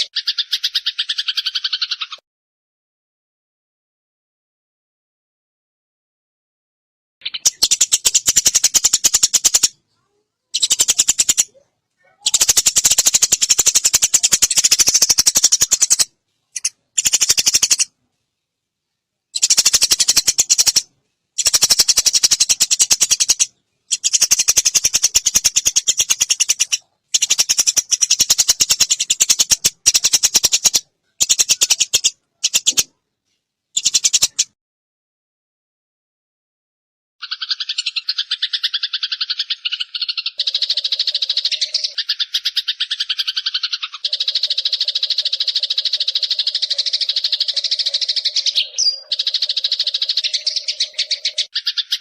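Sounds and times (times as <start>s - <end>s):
songbird rattling trills: 7.2s - 9.7s, 10.6s - 11.5s, 12.3s - 17.9s, 19.4s - 32.9s, 33.8s - 34.5s, 37.2s - 52.0s.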